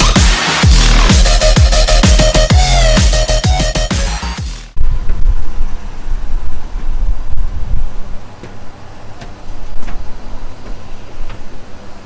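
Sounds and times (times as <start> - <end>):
wind buffeting microphone: 4.8 - 12.0.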